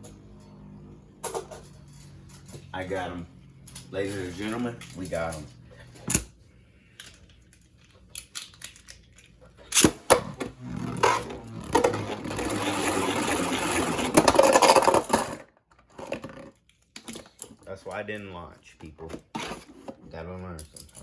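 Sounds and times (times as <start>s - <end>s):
spinning tops rattling in plastic stadium: 11.0s - 15.2s.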